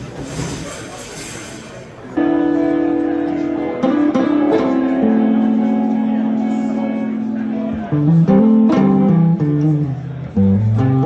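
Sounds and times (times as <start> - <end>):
slow blues electric guitar: 2.2 - 11.0.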